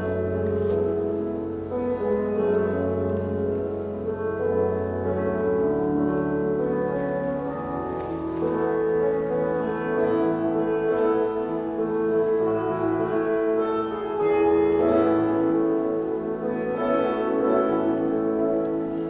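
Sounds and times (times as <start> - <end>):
slow instrumental music: 0.0 - 19.0.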